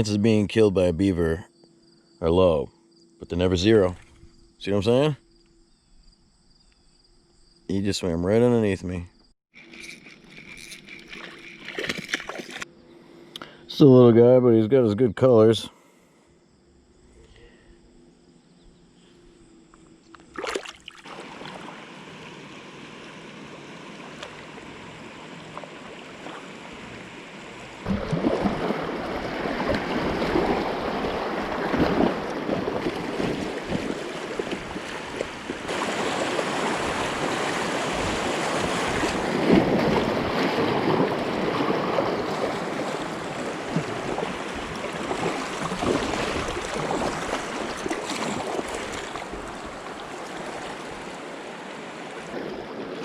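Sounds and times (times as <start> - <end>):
river water rushing: 20.5 - 53.0.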